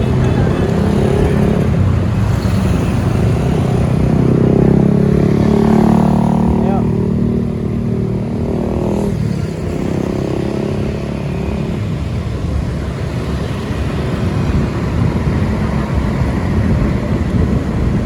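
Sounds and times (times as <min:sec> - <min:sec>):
low traffic rumble: 0:00.0 - 0:18.0
vehicle engine droning: 0:00.0 - 0:18.0.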